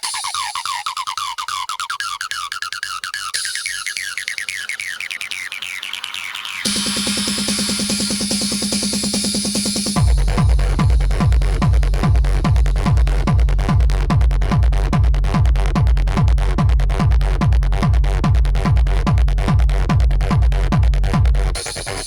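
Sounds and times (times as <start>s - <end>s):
dense high noise: 3.4s - 14.5s
hard techno kick drum: 6.7s - 22.0s
low bass drone: 6.7s - 22.0s.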